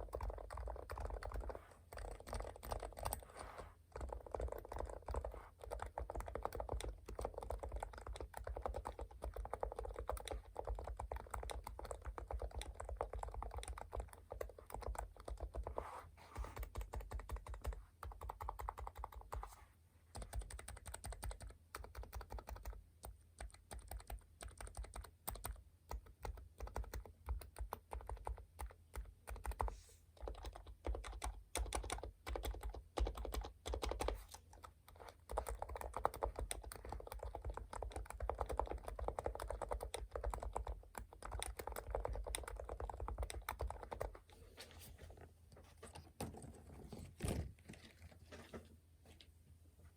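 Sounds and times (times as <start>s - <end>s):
typing on computer keyboard: 0.0s - 15.8s, 16.6s - 19.4s, 20.1s - 44.3s.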